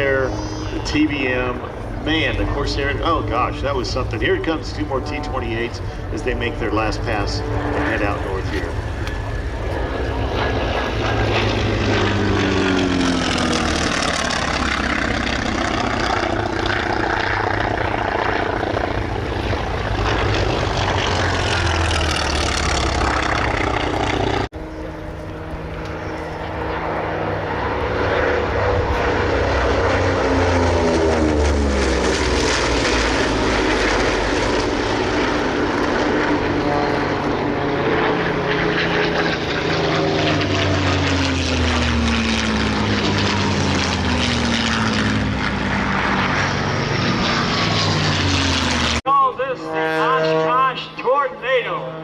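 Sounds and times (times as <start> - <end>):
propeller plane passing: 0.0 - 52.0.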